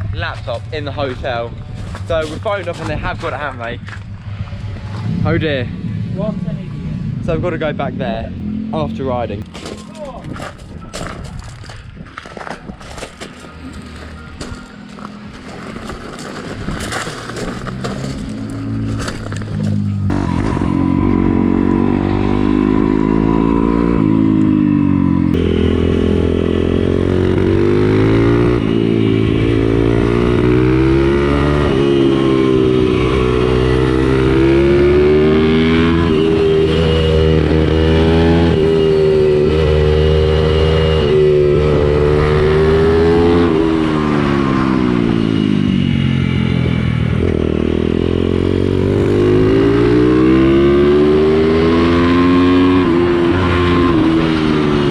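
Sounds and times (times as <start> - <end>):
small motorcycle engine revving: 17.3 - 54.9.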